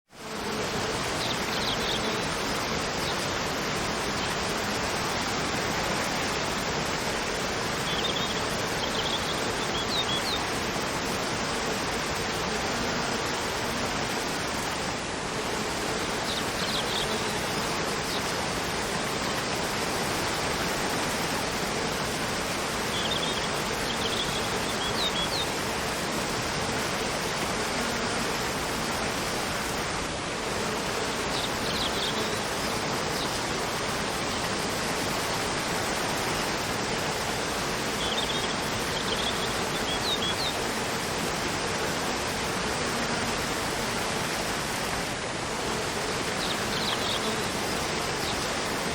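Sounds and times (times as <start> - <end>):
waterfall cascading: 0.4 - 48.9
birds chirping: 22.9 - 25.5, 38.0 - 40.6.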